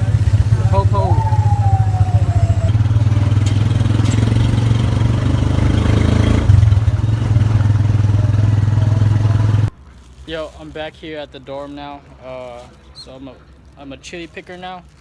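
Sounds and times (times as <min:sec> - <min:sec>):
falling tone: 0:00.6 - 0:02.9.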